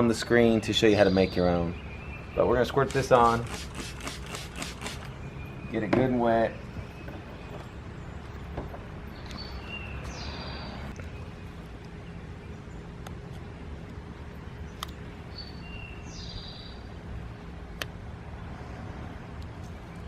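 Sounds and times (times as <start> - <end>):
low outdoor rumble: 4.9 - 20.0.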